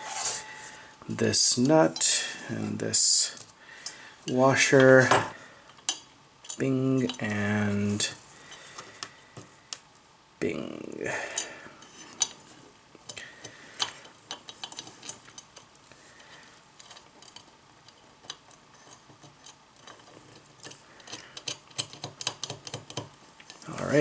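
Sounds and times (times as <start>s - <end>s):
small metal clicks: 13.1s - 23.6s.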